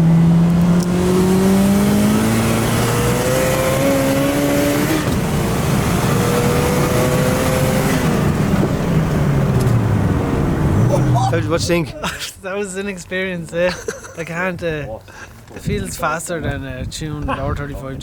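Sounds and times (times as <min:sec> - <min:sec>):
car engine accelerating: 0:00.0 - 0:11.9.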